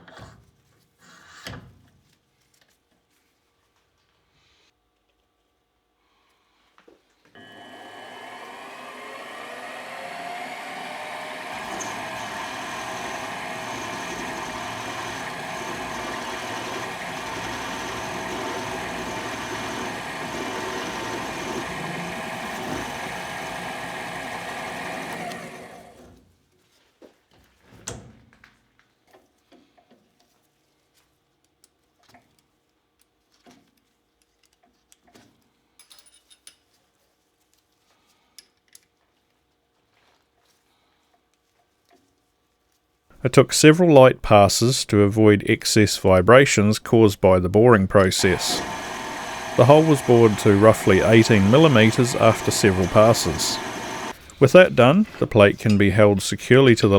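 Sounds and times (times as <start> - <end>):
spindle motor whining: 7.4 - 26.1, 43.3 - 56.9.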